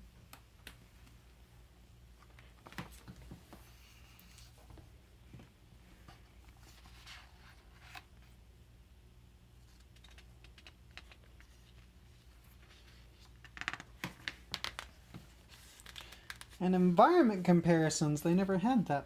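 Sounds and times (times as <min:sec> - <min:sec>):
paper and cardboard rustling: 0:06.0 - 0:08.3, 0:09.6 - 0:16.6.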